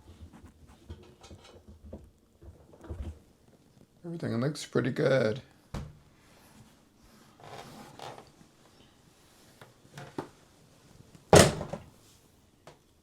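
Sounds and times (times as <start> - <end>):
washing machine door thunk: 11.3 - 11.9.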